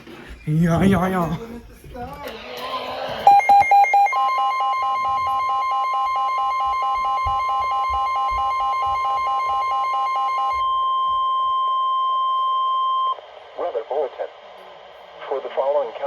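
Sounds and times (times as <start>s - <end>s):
steady alarm tone: 2.7s - 13.2s
rapid beeping: 3.2s - 11.1s.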